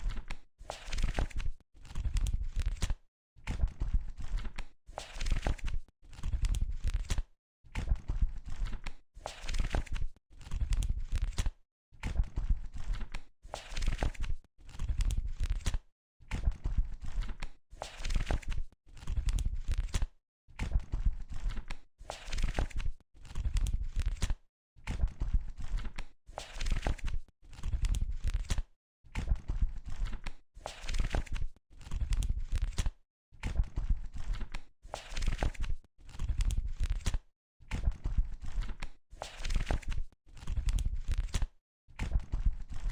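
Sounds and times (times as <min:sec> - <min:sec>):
book pages turning: 0:00.0 - 0:02.9, 0:04.3 - 0:06.3, 0:30.0 - 0:32.9, 0:34.2 - 0:37.2, 0:38.5 - 0:41.5.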